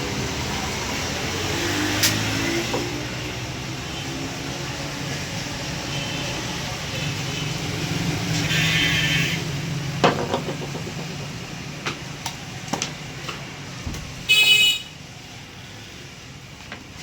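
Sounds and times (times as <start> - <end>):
vehicle horn honk: 8.4 - 9.4, 14.3 - 14.9
sharp metallic clicks and knocks: 10.0 - 14.3.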